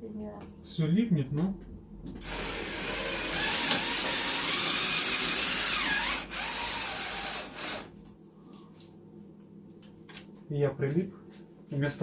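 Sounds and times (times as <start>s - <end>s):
power drill whining: 2.2s - 7.9s.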